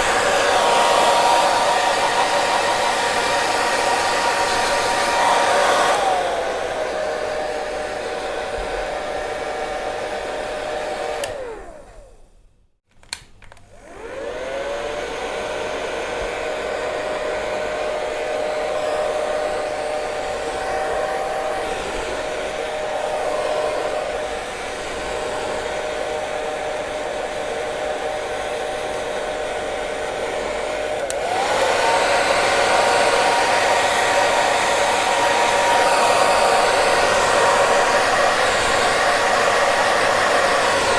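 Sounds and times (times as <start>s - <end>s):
hair dryer running: 0.0s - 12.3s, 13.1s - 40.9s
hair dryer switch click: 11.1s - 11.6s, 13.0s - 13.7s, 30.9s - 31.6s.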